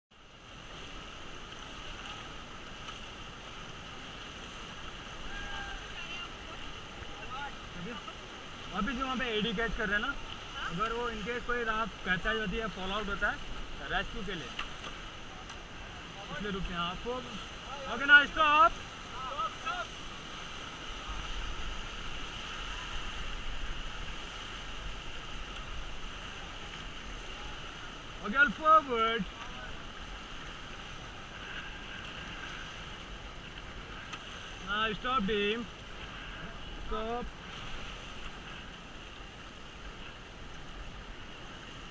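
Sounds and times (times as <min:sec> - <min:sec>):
river water rushing: 0:00.1 - 0:41.9
wind rumbling on microphone: 0:19.9 - 0:28.3.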